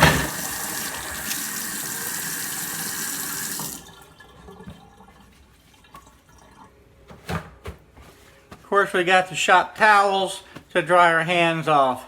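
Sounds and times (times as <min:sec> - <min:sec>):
tap running into sink: 0:00.0 - 0:03.8.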